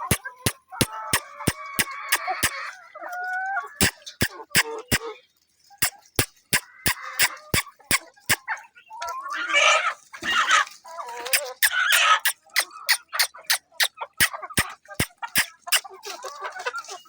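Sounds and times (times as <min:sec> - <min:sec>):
sharp clicks: 0:00.0 - 0:02.6, 0:03.8 - 0:05.0, 0:05.8 - 0:08.4, 0:11.3 - 0:15.9
hens clucking and squawking: 0:00.0 - 0:05.2, 0:05.8 - 0:17.0.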